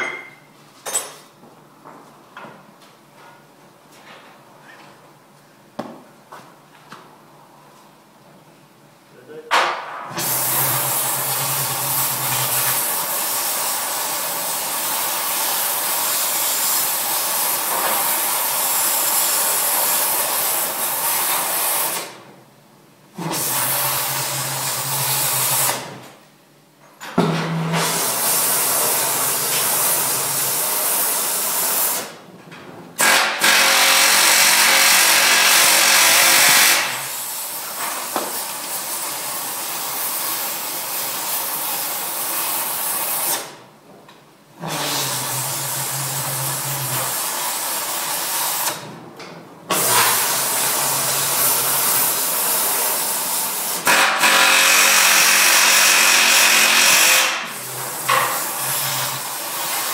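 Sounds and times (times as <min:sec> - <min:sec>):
power tool hissing and humming: 0:10.2 - 0:22.1, 0:23.2 - 0:25.9, 0:27.8 - 0:32.1, 0:33.0 - 0:37.4, 0:44.6 - 0:48.8, 0:49.7 - 0:59.9.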